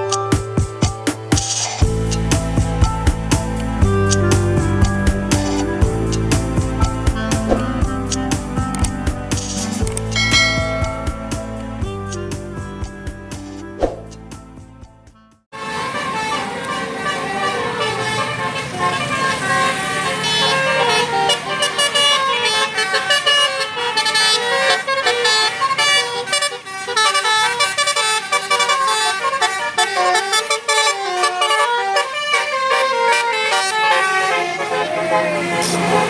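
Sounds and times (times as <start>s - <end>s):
melodic bus air horn: 1.5s - 14.6s, 15.5s - 36.0s.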